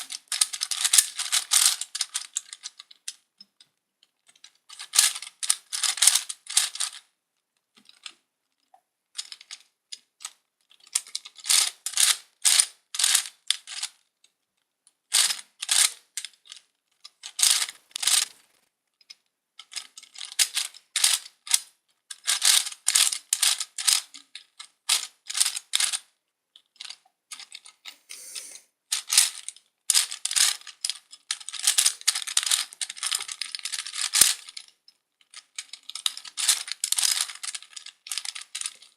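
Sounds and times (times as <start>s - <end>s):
plastic puzzle gears clicking: 0.1s - 3.2s, 17.2s - 18.4s, 19.1s - 27.8s, 28.9s - 38.9s.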